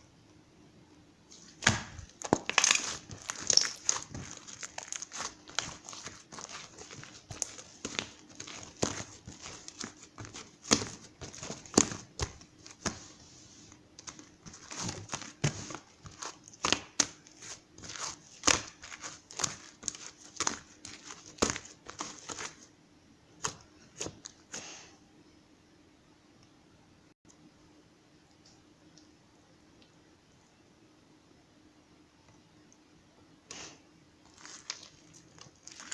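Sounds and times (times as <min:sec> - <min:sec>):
crinkling rustles: 0:01.3 - 0:22.7, 0:34.2 - 0:35.9.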